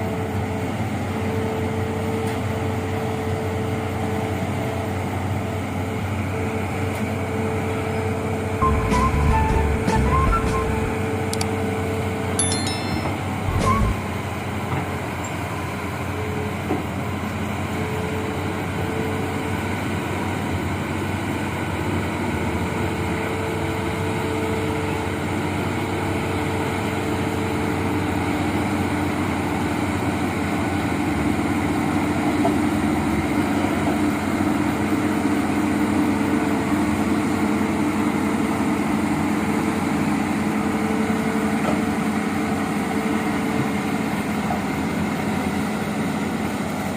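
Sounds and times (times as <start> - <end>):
diesel engine droning: 0.0 - 30.1.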